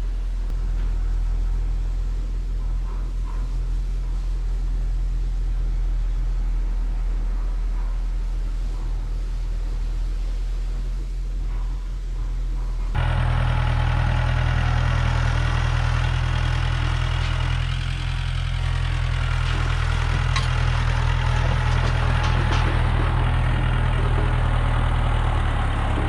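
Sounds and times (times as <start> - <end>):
motor humming: 12.9 - 26.0.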